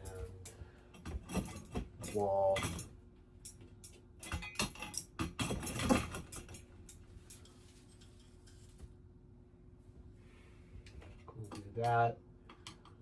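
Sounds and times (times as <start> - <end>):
metal hardware clinking and rattling: 0.0 - 8.7, 11.2 - 12.1
faint steady hum: 0.0 - 13.0.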